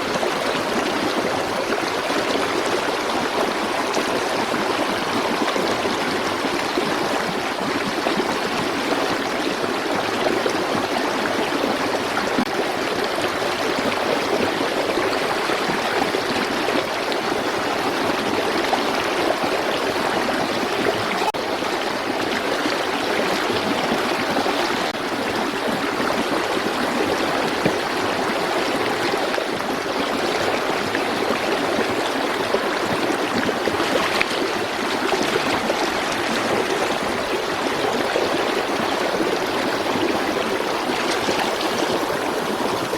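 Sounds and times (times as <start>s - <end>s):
running water rushing: 0.0s - 42.9s.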